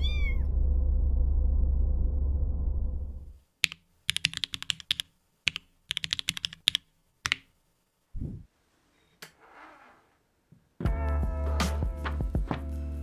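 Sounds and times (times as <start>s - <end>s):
low rumble: 0.0s - 3.4s
mechanical keyboard typing: 3.6s - 7.5s.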